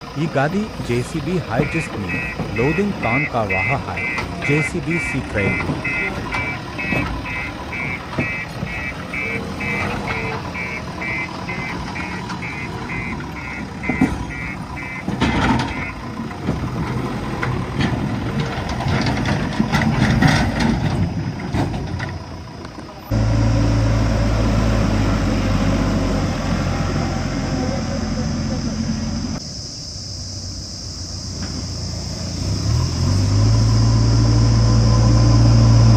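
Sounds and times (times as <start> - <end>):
diesel engine running: 0.0 - 35.9
reversing alarm beeps: 1.2 - 16.0.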